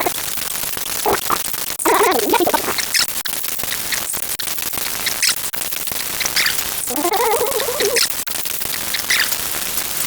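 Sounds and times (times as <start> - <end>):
static hiss with crackling: 0.0 - 10.0
warbling pitched tone: 1.0 - 3.0.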